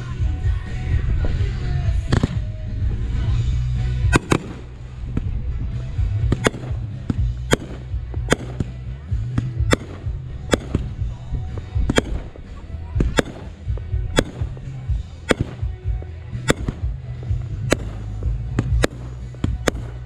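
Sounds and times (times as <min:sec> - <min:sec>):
steady low rumble: 0:00.0 - 0:20.0
fireworks banging: 0:04.1 - 0:05.4, 0:06.1 - 0:20.0.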